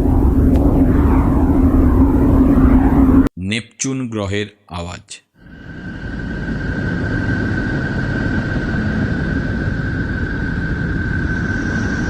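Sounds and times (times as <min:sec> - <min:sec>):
steady rumbling noise: 0:00.0 - 0:03.3, 0:05.4 - 0:12.0.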